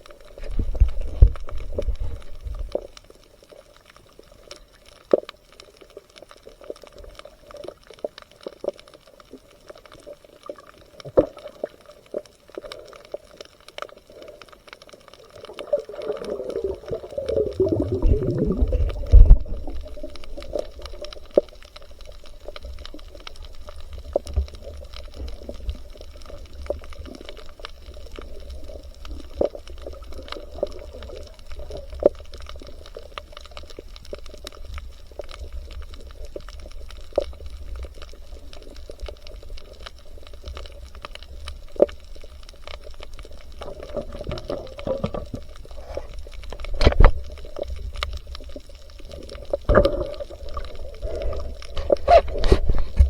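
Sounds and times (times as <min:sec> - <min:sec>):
low underwater rumble: 0:00.0 - 0:03.1, 0:15.2 - 0:53.0
water sloshing and bubbling: 0:00.0 - 0:53.0.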